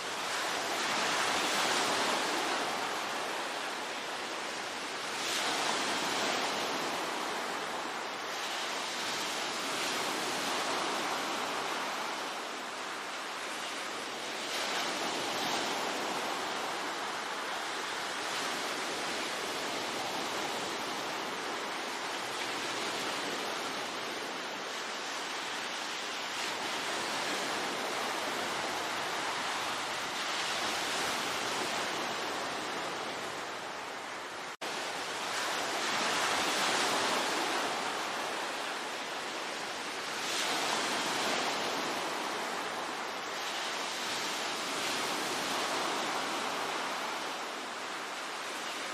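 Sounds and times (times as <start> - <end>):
sea waves breaking on shore: 0.0 - 48.9.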